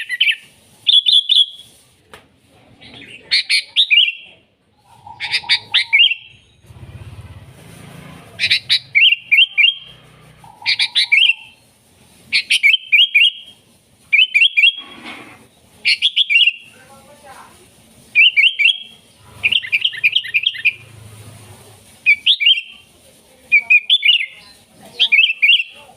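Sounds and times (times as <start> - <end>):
bulbul singing: 2.8 - 6.6, 8.4 - 11.6, 12.3 - 14.8, 15.9 - 16.7, 18.1 - 20.9, 22.1 - 22.8, 23.5 - 25.8.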